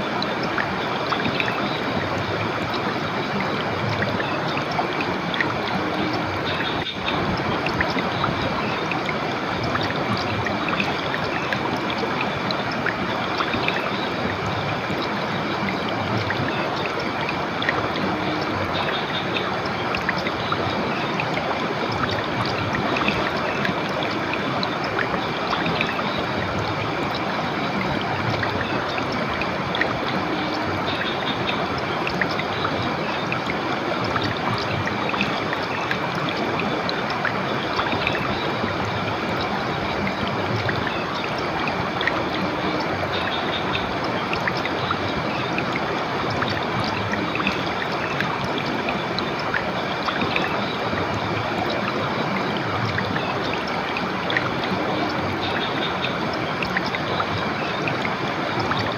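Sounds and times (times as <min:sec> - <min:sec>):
river water flowing over rocks: 0:00.0 - 0:58.9.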